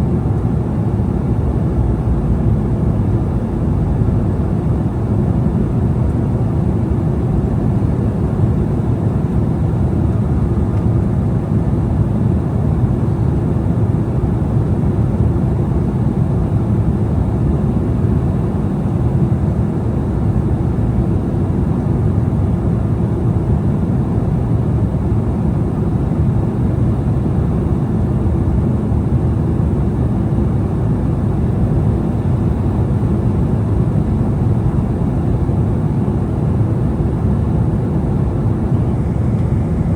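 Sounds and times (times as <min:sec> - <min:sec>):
airliner cabin noise: 0:25.1 - 0:39.9
jet engines humming: 0:25.6 - 0:39.9
airflow: 0:38.0 - 0:39.9.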